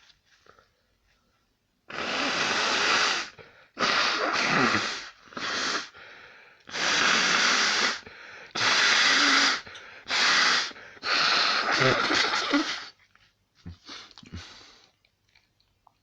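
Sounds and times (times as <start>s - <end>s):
person blowing nose: 1.9s - 6.1s, 6.7s - 13.0s
person breathing: 5.0s - 6.7s, 7.6s - 12.0s, 13.6s - 15.0s.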